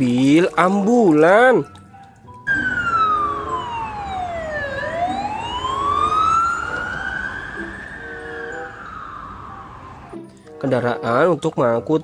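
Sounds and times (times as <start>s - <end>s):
ambulance siren wailing: 2.5s - 10.4s.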